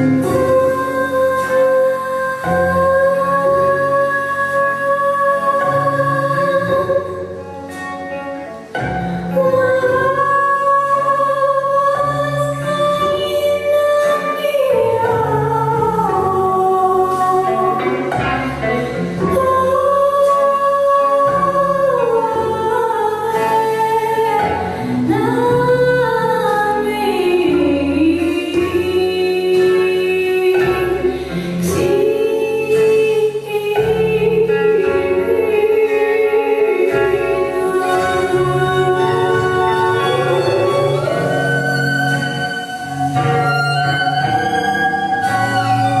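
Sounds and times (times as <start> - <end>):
jazz band accompaniment: 0.0 - 46.0
person singing jazz: 0.0 - 46.0.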